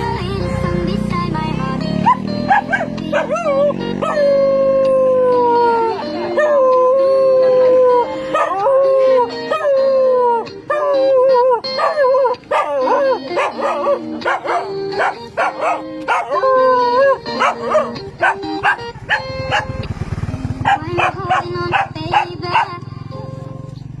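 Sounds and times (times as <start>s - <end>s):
dog yipping and barking: 2.0s - 6.9s, 8.2s - 19.9s, 20.6s - 22.8s
dog howling: 2.5s - 19.7s.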